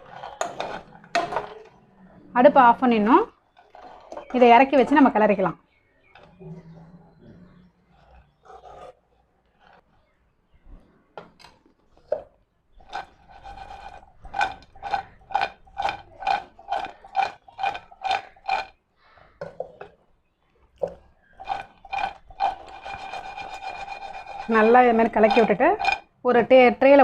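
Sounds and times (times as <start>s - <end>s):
spoon scraping metal pan: 0.0s - 1.8s, 2.9s - 5.3s, 12.9s - 18.7s, 21.4s - 26.1s.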